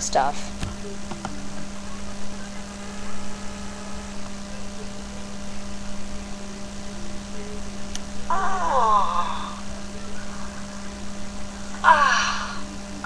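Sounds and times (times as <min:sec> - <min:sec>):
electrical hum: 0:00.0 - 0:13.0.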